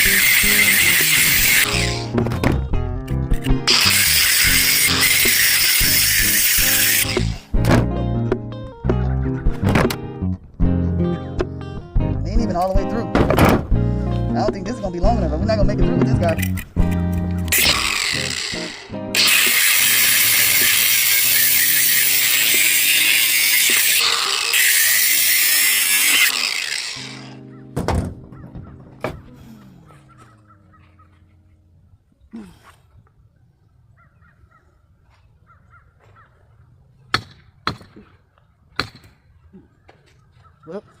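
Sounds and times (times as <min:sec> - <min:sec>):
angle grinder cutting brick: 0:00.0 - 0:02.3, 0:03.4 - 0:07.6, 0:17.5 - 0:27.5.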